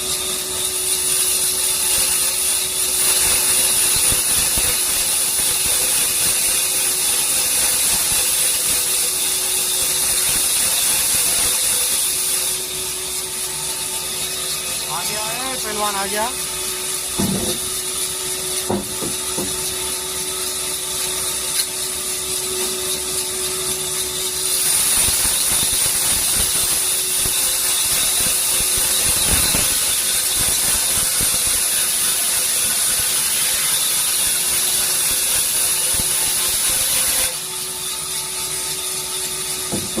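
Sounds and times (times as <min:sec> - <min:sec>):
band saw humming: 0:00.0 - 0:24.9, 0:37.3 - 0:40.0
saw cutting wood hiss: 0:00.0 - 0:40.0.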